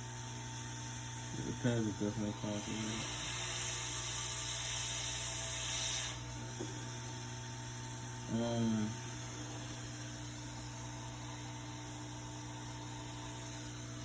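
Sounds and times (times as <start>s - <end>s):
constant electrical hum: 0.0s - 14.0s.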